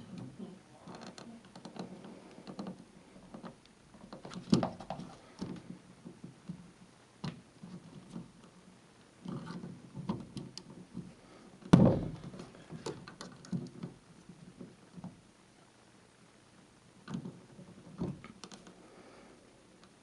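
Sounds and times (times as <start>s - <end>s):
loud thump: 11.7s - 12.3s.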